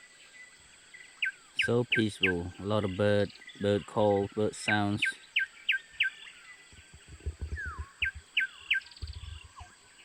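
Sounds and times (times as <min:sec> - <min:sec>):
high insect drone: 0:00.0 - 0:10.0
birds calling sharp notes: 0:00.9 - 0:10.0
fast bird trill: 0:04.6 - 0:09.7
low knocks: 0:06.7 - 0:08.3, 0:08.9 - 0:09.6.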